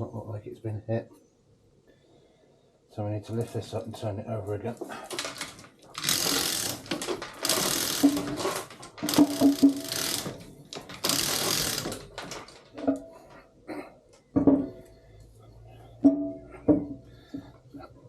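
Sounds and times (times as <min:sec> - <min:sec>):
lifting gear ratcheting: 0:05.1 - 0:13.0.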